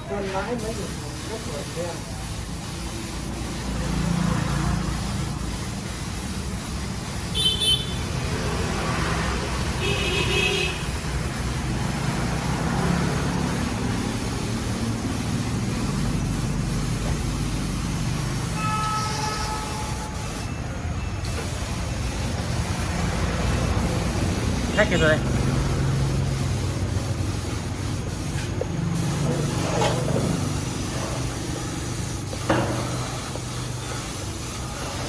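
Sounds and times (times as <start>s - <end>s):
road traffic engines: 0.0s - 35.0s
horn toots: 7.3s - 8.0s, 18.6s - 20.2s.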